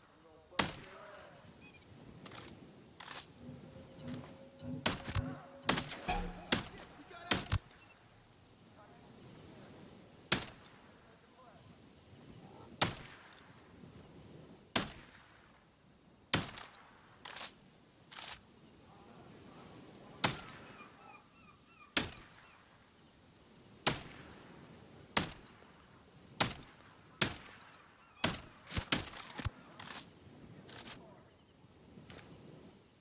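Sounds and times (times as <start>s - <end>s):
shotgun shots with echo: 3.6s - 7.8s.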